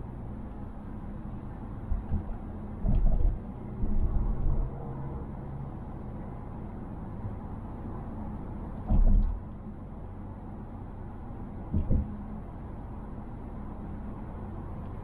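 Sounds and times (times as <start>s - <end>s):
road and tyre noise in car: 0.0s - 15.0s
low thumps of car body: 1.9s - 4.0s, 8.9s - 9.4s, 11.7s - 12.2s.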